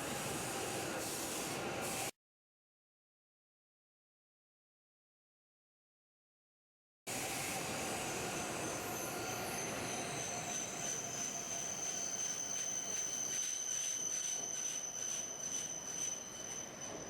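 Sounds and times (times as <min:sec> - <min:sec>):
train running on rails: 0:07.1 - 0:17.0.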